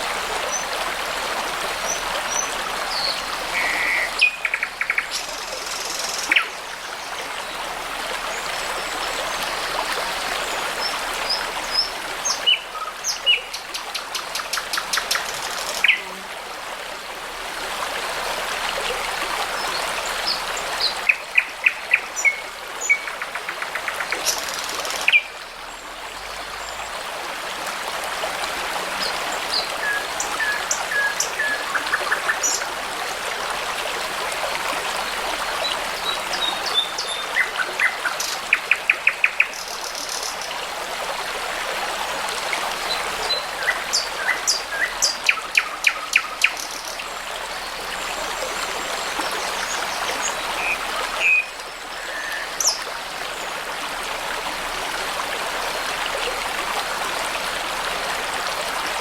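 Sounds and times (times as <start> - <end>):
babbling brook: 0.0 - 59.0
songbirds singing: 35.6 - 40.5.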